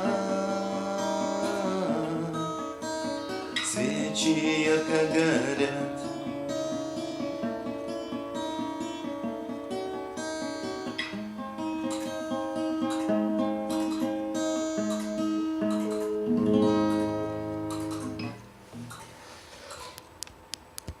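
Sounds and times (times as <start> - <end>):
acoustic guitar playing: 0.0 - 19.6
sharp clicks: 14.9 - 16.2.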